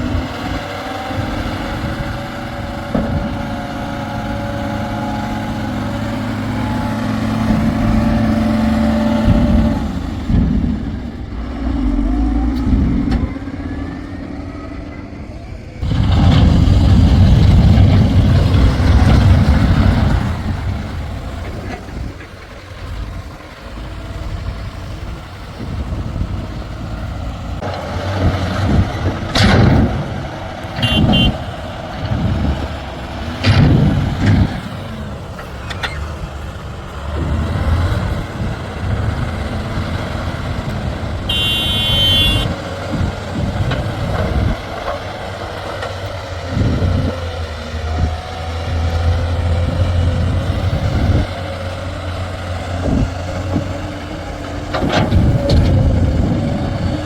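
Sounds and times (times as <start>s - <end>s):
diesel engine working: 0.0s - 57.0s.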